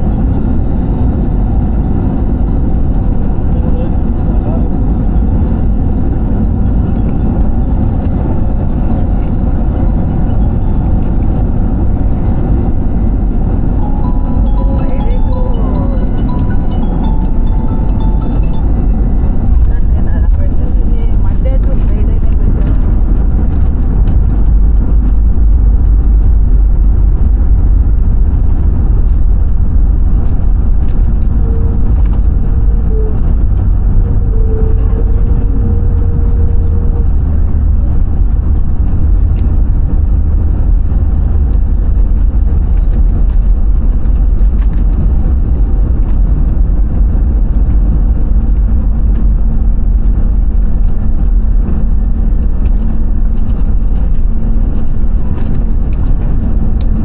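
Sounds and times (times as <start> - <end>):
airliner cabin engine roar: 0.0 - 57.0.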